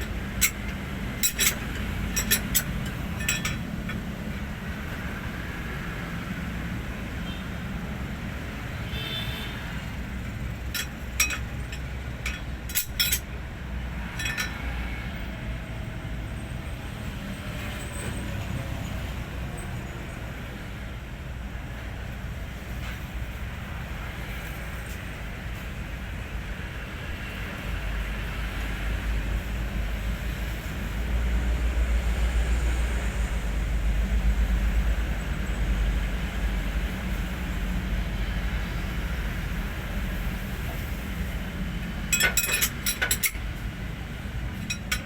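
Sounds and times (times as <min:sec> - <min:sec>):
diesel truck engine rumbling: 0:00.0 - 0:08.9, 0:09.6 - 0:21.9.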